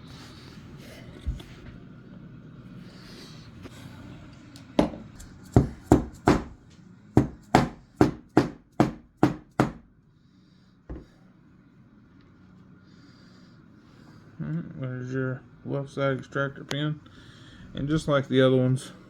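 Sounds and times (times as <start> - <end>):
hammer tapping a pin punch: 7.2 - 9.8.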